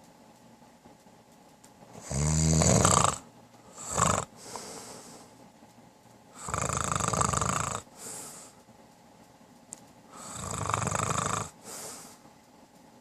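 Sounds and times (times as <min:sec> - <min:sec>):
man snoring: 0:02.0 - 0:04.6, 0:06.4 - 0:07.9, 0:10.2 - 0:11.9.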